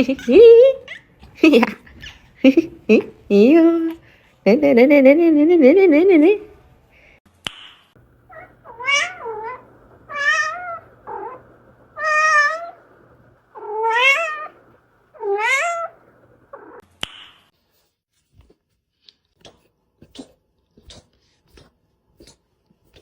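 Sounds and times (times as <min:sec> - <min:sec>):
cat meowing: 0:08.3 - 0:13.0, 0:13.6 - 0:16.8.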